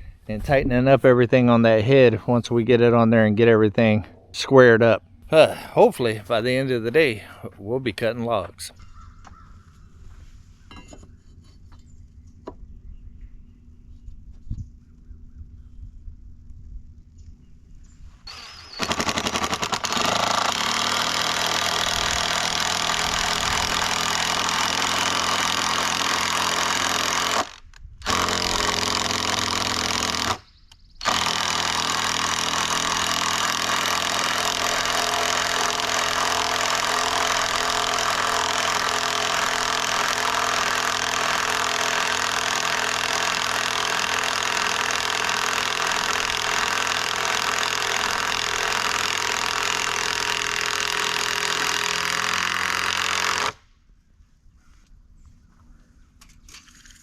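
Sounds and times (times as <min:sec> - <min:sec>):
impact driver driving screws: 0:31.0 - 0:53.6.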